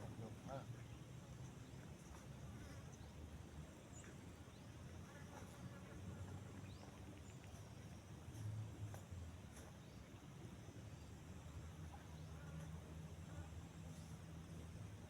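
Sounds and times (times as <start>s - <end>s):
faint high chirps and ticks: 6.3s - 14.7s.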